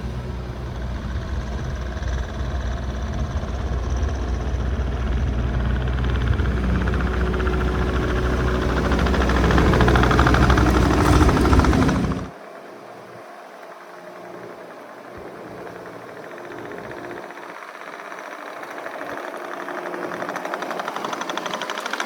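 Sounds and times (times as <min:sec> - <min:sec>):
diesel engine running: 0:00.0 - 0:12.3.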